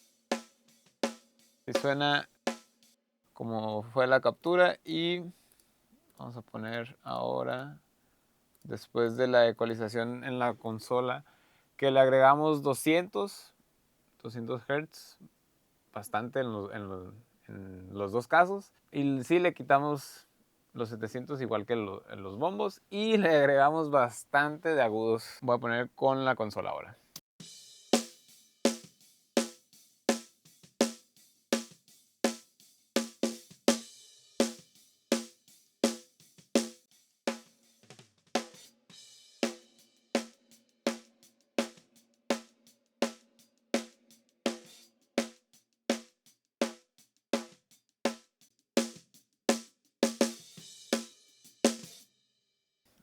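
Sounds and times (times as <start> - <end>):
snare drum hits: 0.0 - 2.7.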